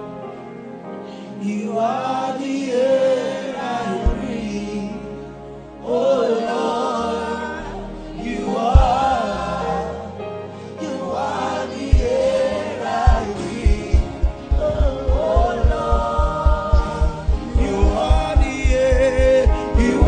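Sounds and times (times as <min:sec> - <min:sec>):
choir singing gospel song: 0:01.4 - 0:20.0
kick drum beat: 0:04.1 - 0:04.3, 0:08.8 - 0:09.1, 0:11.9 - 0:12.4, 0:13.1 - 0:20.0.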